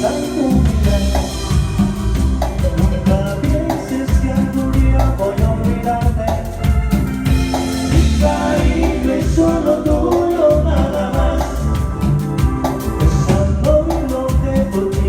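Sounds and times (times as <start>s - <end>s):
latin dance music: 0.0s - 15.0s.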